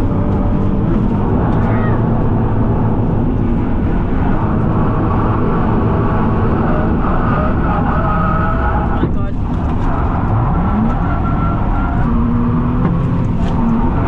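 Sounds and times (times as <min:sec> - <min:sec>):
car engine droning: 0:00.0 - 0:14.0.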